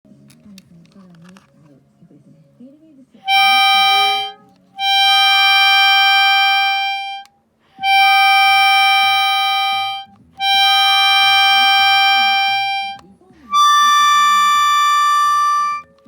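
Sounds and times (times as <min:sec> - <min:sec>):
concertina reed notes: 0:03.2 - 0:16.0.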